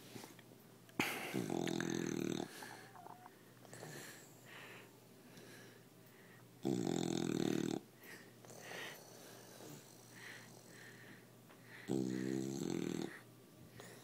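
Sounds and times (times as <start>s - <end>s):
dog snoring: 1.4s - 3.9s, 6.6s - 7.9s, 11.8s - 13.2s.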